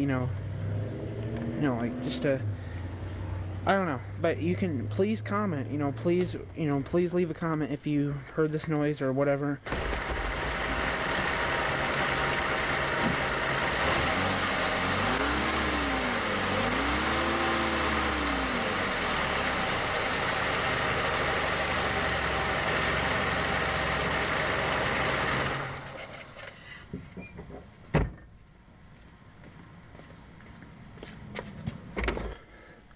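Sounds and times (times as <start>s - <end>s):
car engine revving: 0.4s - 3.6s, 9.7s - 26.3s.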